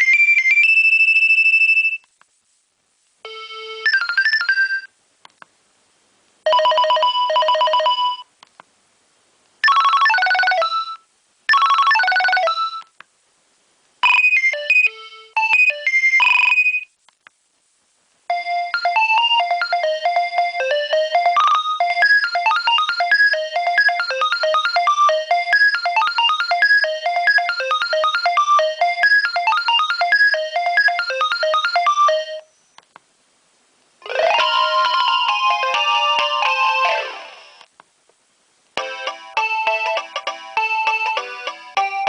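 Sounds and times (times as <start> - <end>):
electronic ringtone melodies: 0.0 - 2.0, 3.3 - 4.9, 6.5 - 8.3, 9.6 - 12.9, 14.0 - 16.9, 18.3 - 32.6, 34.0 - 37.6, 38.8 - 42.0.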